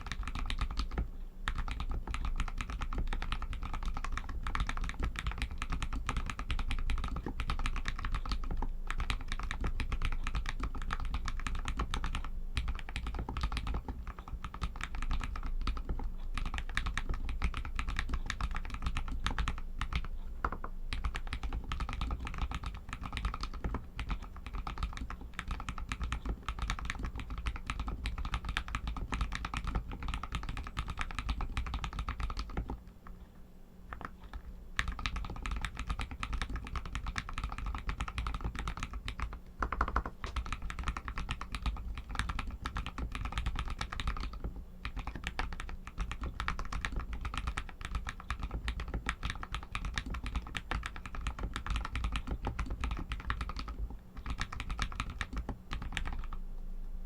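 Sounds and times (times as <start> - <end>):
fast mechanical keyboard typing: 0.0 - 32.9, 33.9 - 56.4.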